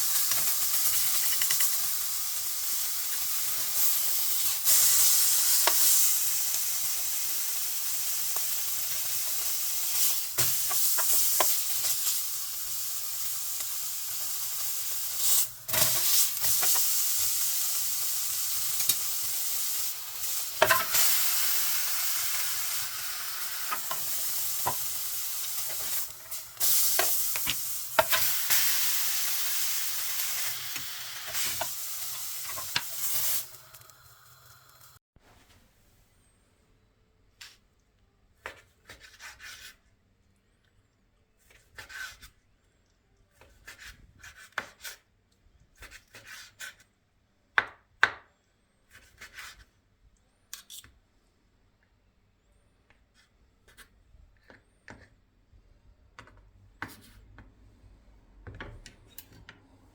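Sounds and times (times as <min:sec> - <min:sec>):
steak sizzling in a pan: 0:00.0 - 0:35.0.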